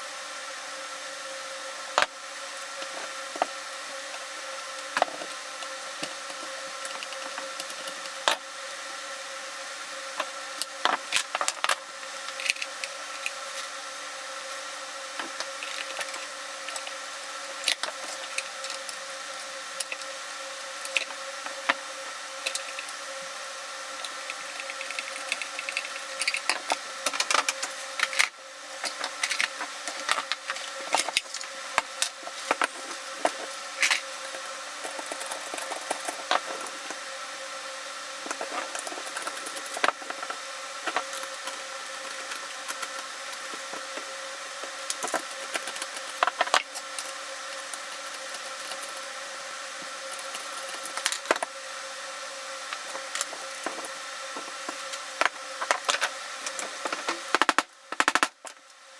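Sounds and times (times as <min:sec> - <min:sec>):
tools and small parts clicking: 0:22.4 - 0:23.0, 0:24.0 - 0:34.0.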